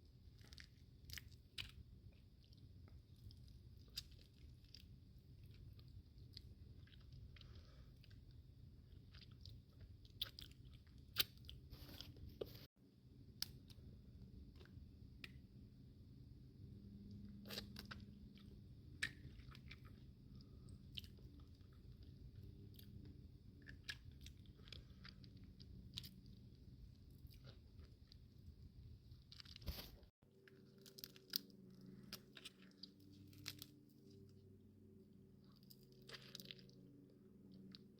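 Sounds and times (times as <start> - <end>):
close-up chewing: 0.1 - 12.7, 16.9 - 34.3, 35.4 - 37.9.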